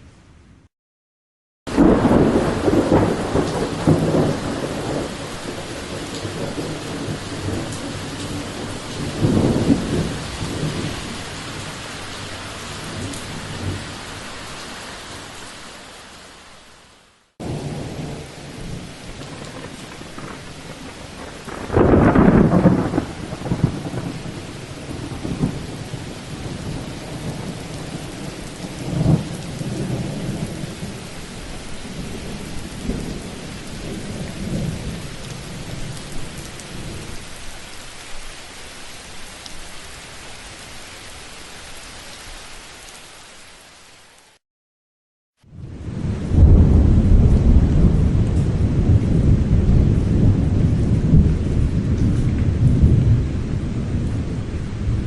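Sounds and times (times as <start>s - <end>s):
loud thunderclap: 1.7s - 11.0s, 17.4s - 28.0s, 28.8s - 31.0s, 45.6s - 55.0s
rolling thunder: 1.7s - 11.6s, 17.4s - 31.0s, 45.5s - 55.0s
heavy rain: 1.7s - 44.4s, 45.4s - 55.0s.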